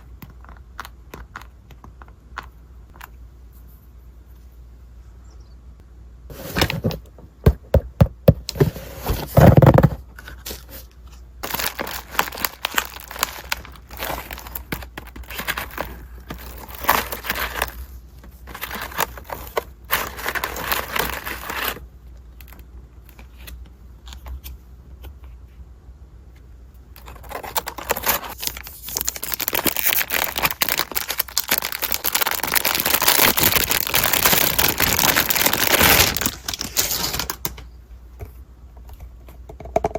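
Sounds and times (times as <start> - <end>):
wrapping crinkling and rustling: 9.2 - 24.4, 27.0 - 37.6
packaging tearing: 11.4 - 21.8, 27.0 - 37.5.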